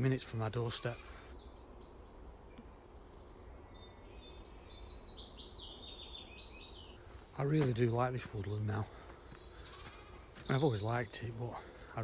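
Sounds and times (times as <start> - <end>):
outdoor background hiss: 0.0 - 12.0
songbird singing: 0.0 - 12.0.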